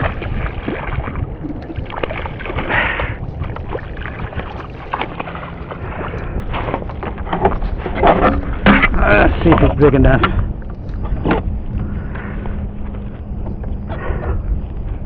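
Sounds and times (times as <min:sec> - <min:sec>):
water splashing: 0:00.0 - 0:11.8
wind on microphone: 0:00.0 - 0:15.0.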